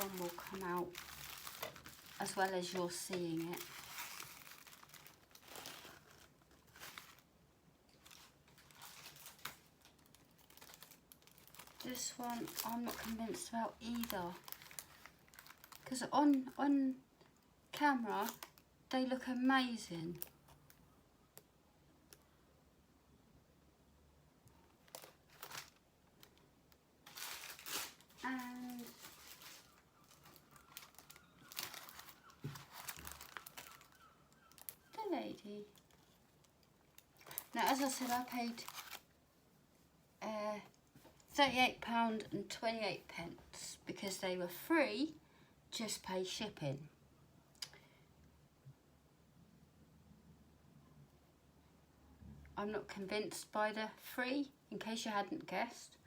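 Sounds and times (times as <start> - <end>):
plastic packaging rustling: 0.0 - 16.6, 17.8 - 18.6, 24.6 - 39.2
soft crinkles and clicks: 0.0 - 18.7, 20.1 - 22.4, 24.4 - 39.2, 40.6 - 41.4.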